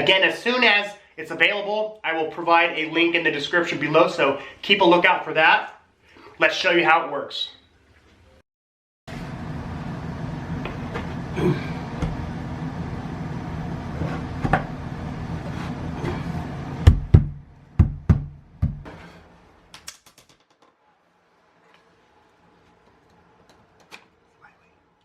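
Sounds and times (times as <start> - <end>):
heavy knocks: 16.8 - 18.9.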